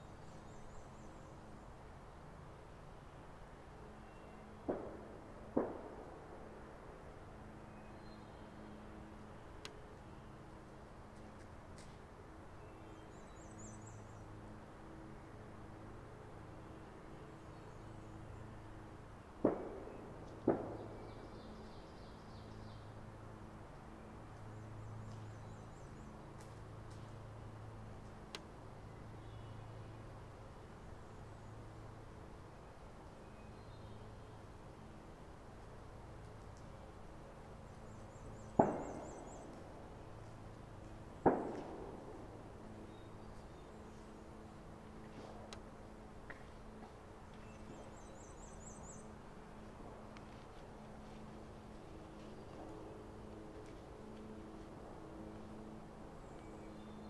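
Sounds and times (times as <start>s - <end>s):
gunshots: 38.6s - 39.2s, 41.2s - 42.0s.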